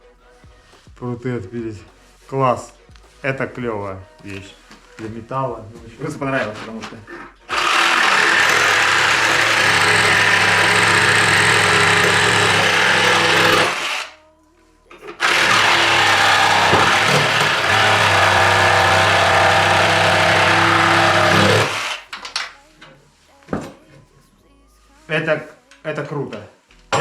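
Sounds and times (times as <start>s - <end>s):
reciprocating saw sawing: 6.5s - 14.2s, 15.2s - 22.1s.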